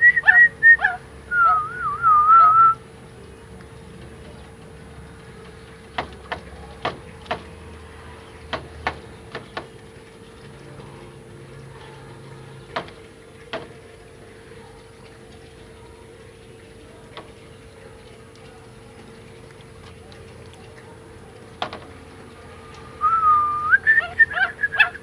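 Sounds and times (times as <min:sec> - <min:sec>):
bird chip calls: 0:00.0 - 0:02.8, 0:23.0 - 0:25.0
faint steady hum: 0:00.0 - 0:25.0.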